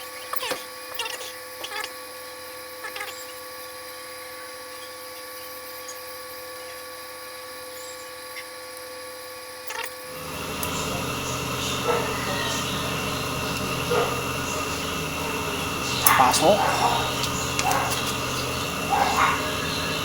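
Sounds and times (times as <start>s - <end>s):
steady hum of fixed tones: 10.1s - 20.0s.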